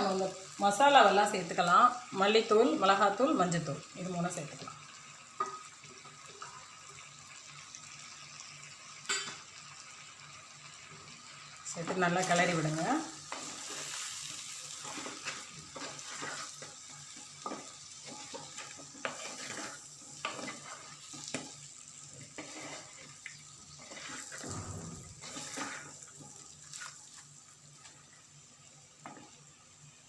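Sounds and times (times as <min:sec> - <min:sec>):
light sizzle: 0:00.0 - 0:30.0
spatula scraping in a pan: 0:11.9 - 0:28.0.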